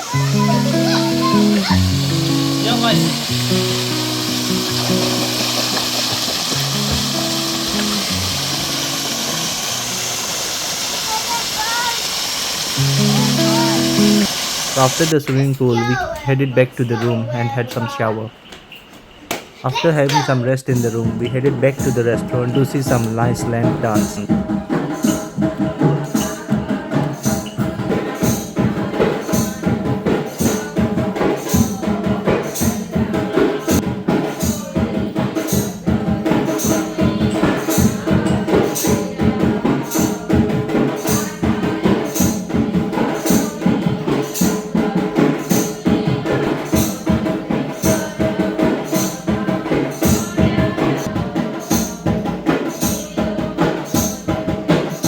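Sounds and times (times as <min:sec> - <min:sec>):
held melodic tones: 0:00.0 - 0:11.4, 0:12.7 - 0:18.3
jingling tambourine-like percussion: 0:00.0 - 0:12.0, 0:12.6 - 0:17.8, 0:18.4 - 0:55.0.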